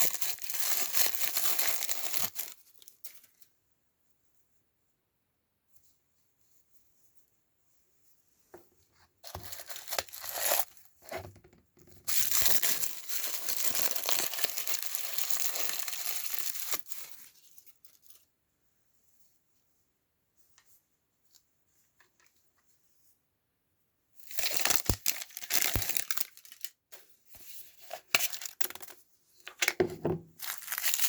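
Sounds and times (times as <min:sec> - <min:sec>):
plastic wrapping tearing and crinkling: 0:00.0 - 0:03.0, 0:09.2 - 0:11.2, 0:12.0 - 0:17.7, 0:24.2 - 0:26.8, 0:27.8 - 0:29.0, 0:30.4 - 0:31.0.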